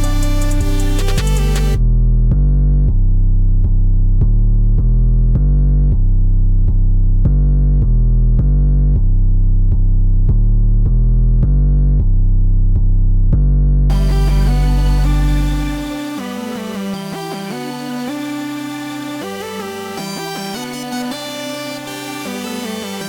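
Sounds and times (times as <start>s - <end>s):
electronic music with pulsing bass synth: 0.0s - 23.0s.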